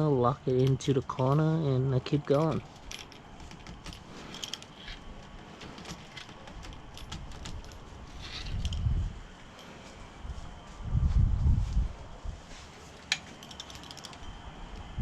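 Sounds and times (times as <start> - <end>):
screen rolling tool clicks and rattles: 2.2 - 8.9, 13.0 - 14.3.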